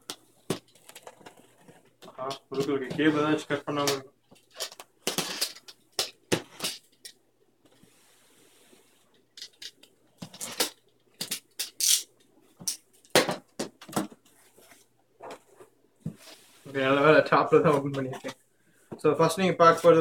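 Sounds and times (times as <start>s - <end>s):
faint sliding hiss: 7.6s - 9.3s, 14.2s - 19.1s.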